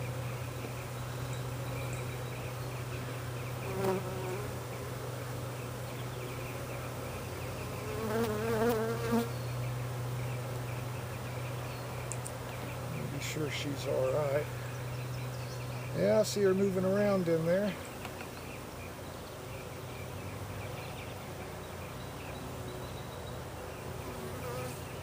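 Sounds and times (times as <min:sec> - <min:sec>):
bees humming as a mass: 0:00.0 - 0:25.0
nearer bee buzz wavering in pitch: 0:01.8 - 0:05.4, 0:06.5 - 0:09.4, 0:24.0 - 0:25.0.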